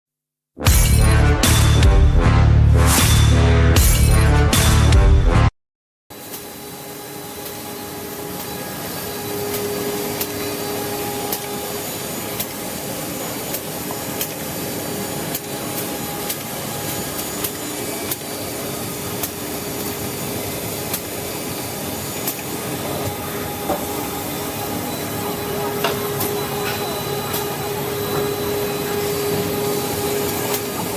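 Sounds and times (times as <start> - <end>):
drilling machine humming: 6.4 - 30.9.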